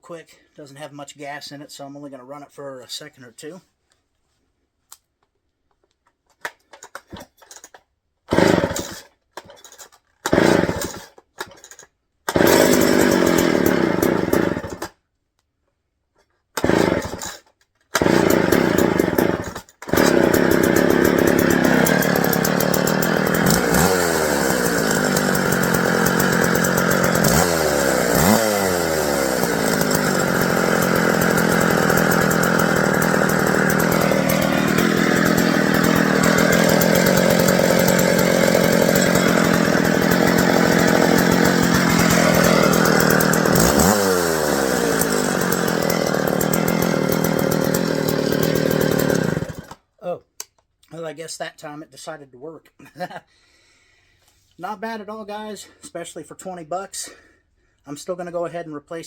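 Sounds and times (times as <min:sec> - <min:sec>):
chainsaw starting and revving: 0:06.8 - 0:07.7, 0:08.3 - 0:15.0, 0:16.6 - 0:49.9.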